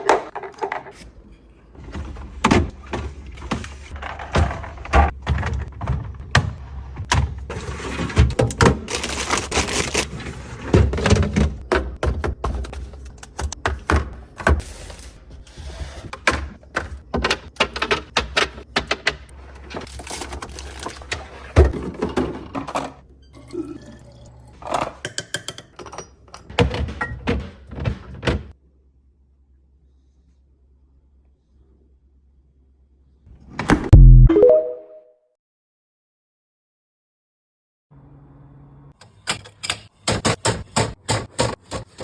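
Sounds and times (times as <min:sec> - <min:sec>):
containers clattering in fridge: 0:01.9 - 0:14.6, 0:16.1 - 0:23.0
packaging rustling: 0:08.9 - 0:10.1.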